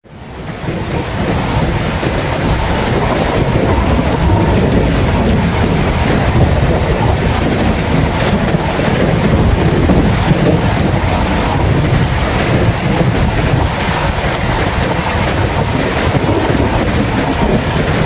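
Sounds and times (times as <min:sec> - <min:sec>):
heavy rain: 0:00.0 - 0:18.0
deep low rumble: 0:01.3 - 0:13.7.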